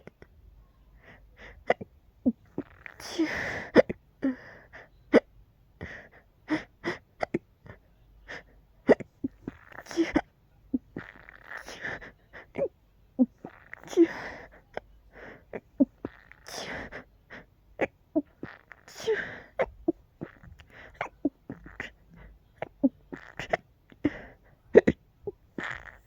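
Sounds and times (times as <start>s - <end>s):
person hiccupping: 1.6s - 4.0s, 8.9s - 14.8s, 15.5s - 17.0s, 17.8s - 26.0s
breathy sneeze-hiccups: 8.9s - 14.4s, 22.6s - 25.0s.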